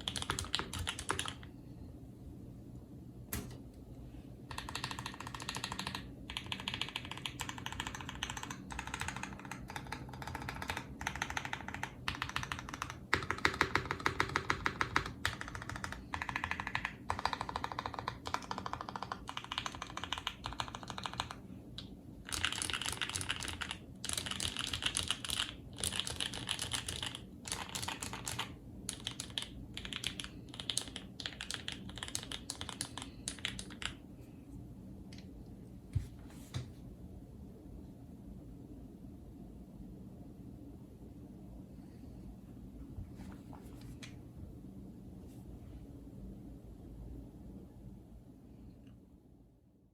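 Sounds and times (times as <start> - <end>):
typing on mechanical keyboard: 0.0 - 1.5, 4.5 - 34.0.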